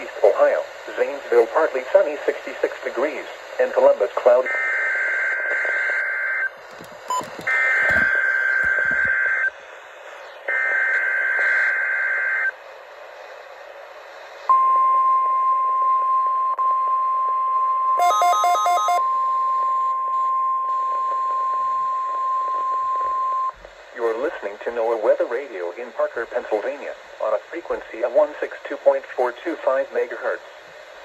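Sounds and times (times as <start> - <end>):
steady warning alarm tone: 4.5 - 9.5, 18.0 - 19.2
rapid beeps: 6.7 - 9.4.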